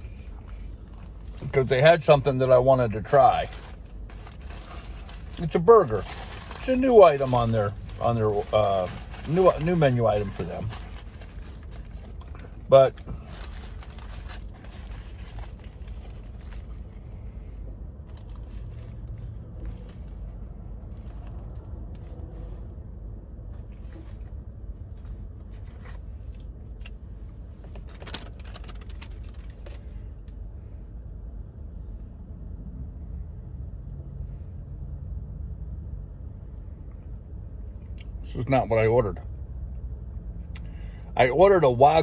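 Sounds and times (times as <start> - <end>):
paper wrapper crinkling: 0.0 - 17.2, 18.0 - 22.6, 27.7 - 29.9
steady low hum: 0.0 - 42.0.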